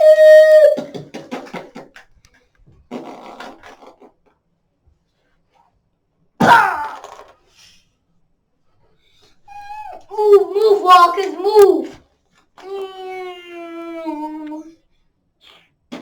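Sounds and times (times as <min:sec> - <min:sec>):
child making battle sound effects: 0:06.4 - 0:07.1, 0:09.6 - 0:12.0.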